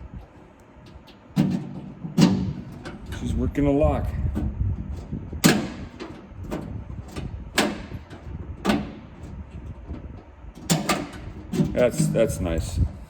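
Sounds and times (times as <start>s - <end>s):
metallic door lock clunks: 4.3s - 12.2s.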